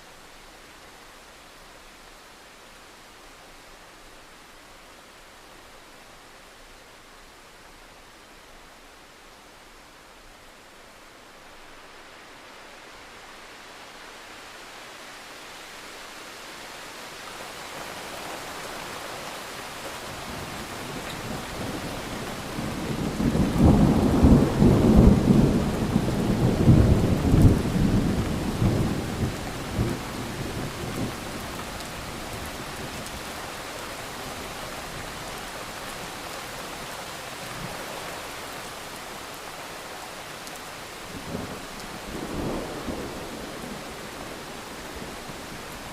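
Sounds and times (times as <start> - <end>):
steady rain: 0.0 - 45.9
thunder rumbling: 21.3 - 31.6.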